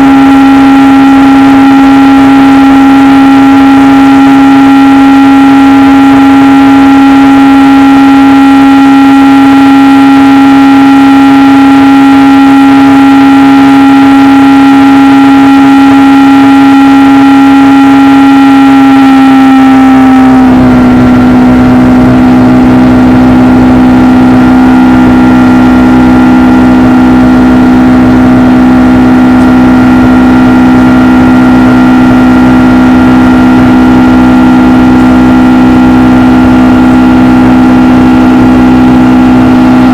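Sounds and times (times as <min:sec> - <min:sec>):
jet engines whining: 0:00.0 - 0:39.9
low rumble: 0:20.3 - 0:39.9.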